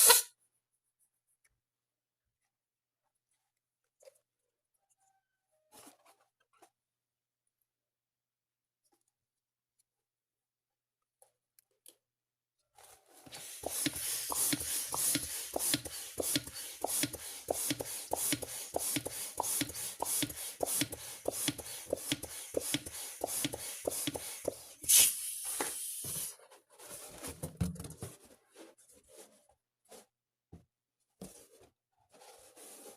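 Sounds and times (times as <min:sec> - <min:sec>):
loud sharp balloon crack: 0:00.0 - 0:00.3
fast strokes on balloon: 0:13.2 - 0:26.3.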